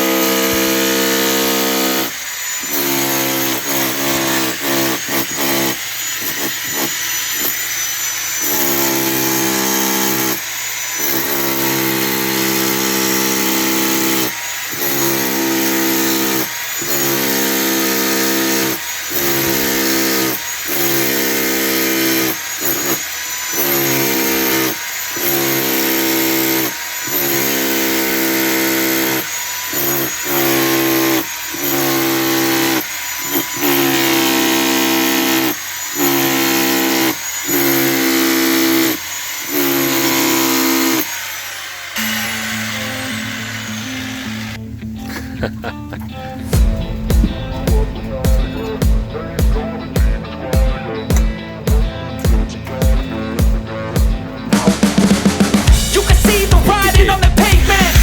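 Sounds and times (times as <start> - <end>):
electric power drill running: 0.0 - 44.6.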